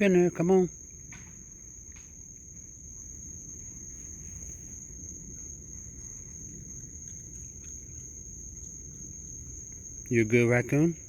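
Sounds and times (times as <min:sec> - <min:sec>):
low background rumble: 0:00.0 - 0:11.0
night insects chorus: 0:00.0 - 0:11.0.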